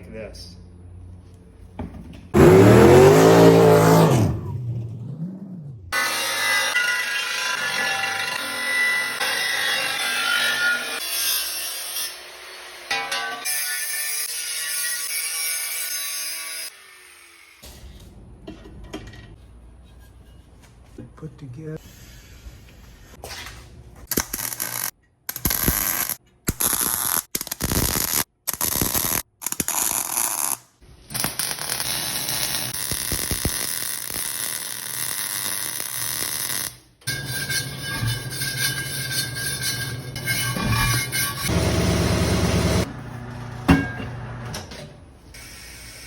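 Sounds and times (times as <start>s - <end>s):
harsh power tool noise: 2.4s - 4.4s, 5.9s - 10.2s, 41.4s - 42.9s.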